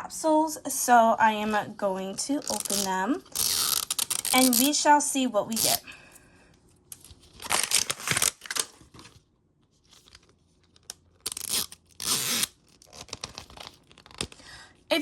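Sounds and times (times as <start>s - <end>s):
plastic packaging crinkling: 2.4s - 4.7s, 6.9s - 14.5s.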